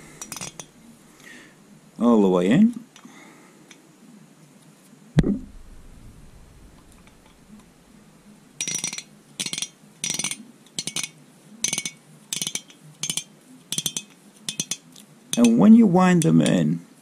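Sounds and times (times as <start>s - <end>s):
screwdriver metallic clinks: 0.2s - 0.7s, 8.6s - 15.6s
dull thump: 5.2s - 6.7s.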